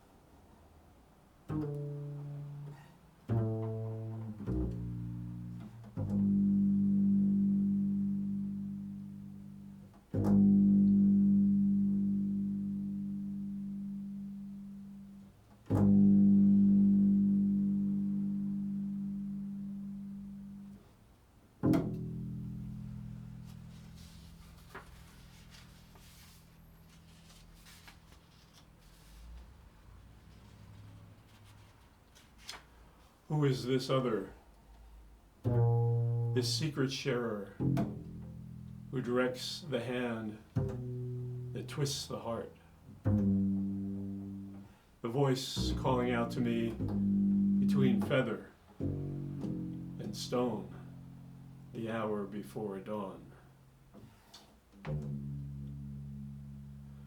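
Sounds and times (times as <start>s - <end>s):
low string notes ringing: 3.3s - 20.9s, 21.6s - 28.6s, 35.4s - 44.8s, 45.4s - 54.0s, 54.8s - 57.0s.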